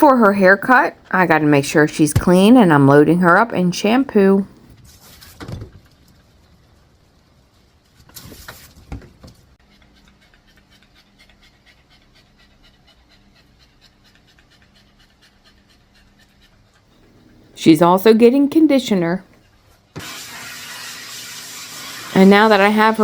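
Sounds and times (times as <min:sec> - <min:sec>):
dog panting: 0:09.6 - 0:17.4.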